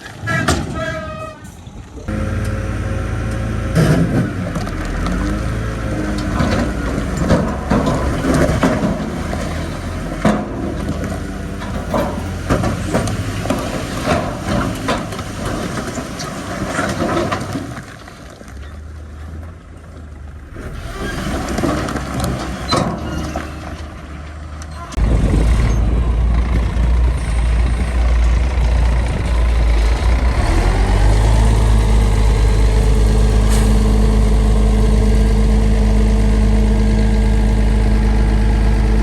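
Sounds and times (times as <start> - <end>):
low diesel engine drone: 0.0 - 16.1, 18.6 - 39.0
rock and metal clatter: 3.8 - 18.9.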